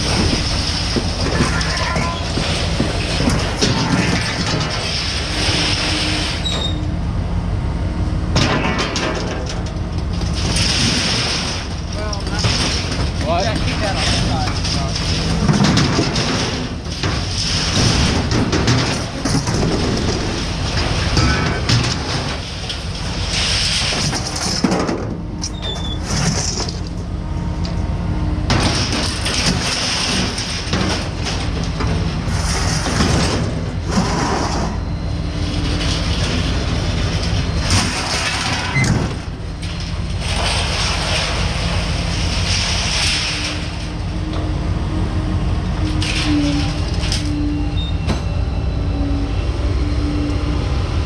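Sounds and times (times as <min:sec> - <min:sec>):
heavy vehicle engine rumble: 0:00.0 - 0:51.0.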